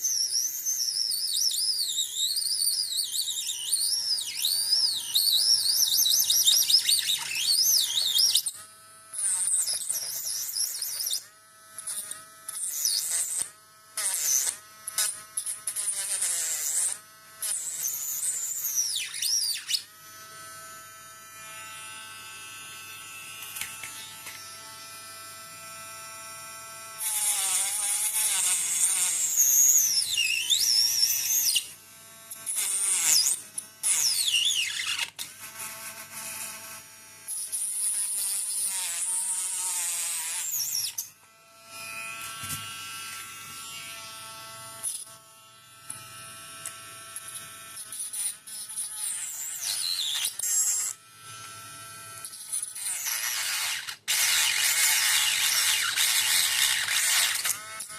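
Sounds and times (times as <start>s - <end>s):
electric grinder whining: 2.2s - 57.9s
grinder disc cutting material: 2.3s - 25.0s, 45.8s - 57.9s.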